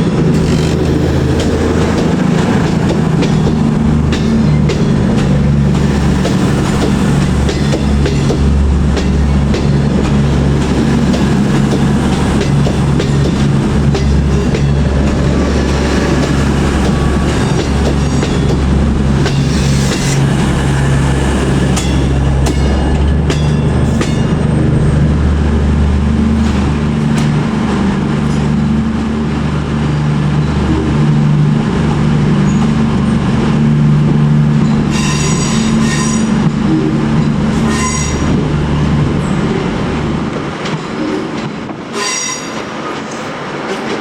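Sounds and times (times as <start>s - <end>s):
train low drone and rumble: 0.0s - 44.0s
high-pitched wheel squeals: 37.7s - 38.3s.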